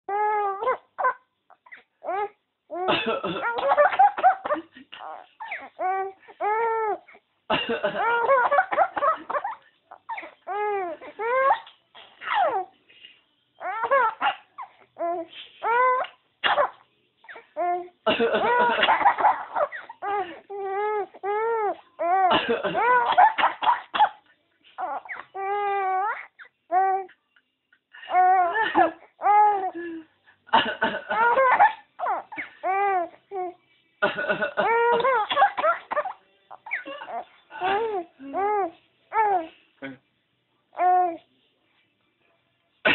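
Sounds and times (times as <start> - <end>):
man coughing: 2.9 - 5.1, 7.5 - 8.1, 22.3 - 24.1, 30.5 - 31.3
baby laughing in squeals: 3.5 - 7.0, 8.0 - 12.7, 13.6 - 23.6, 24.8 - 27.1, 28.1 - 29.8, 31.2 - 33.6, 34.6 - 39.5.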